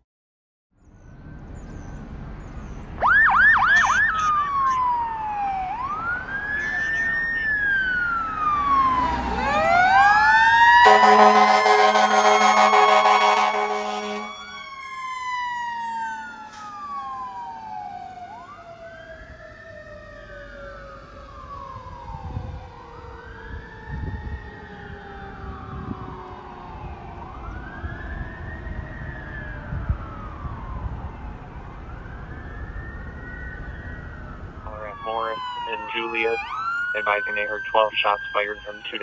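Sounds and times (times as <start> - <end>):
electronic wail siren: 3.0 - 39.0
siren tone winding down: 3.0 - 39.0
fire engine air horn blast: 8.8 - 14.8.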